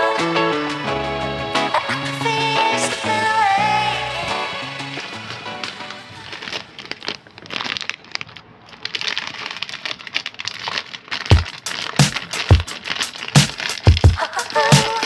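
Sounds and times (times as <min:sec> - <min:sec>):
packaging crinkling: 0:06.2 - 0:15.0.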